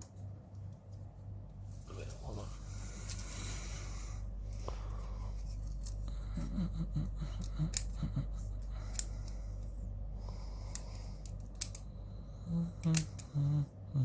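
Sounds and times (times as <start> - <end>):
low electrical hum: 0.0 - 14.0
plastic parts clicking: 10.7 - 11.8.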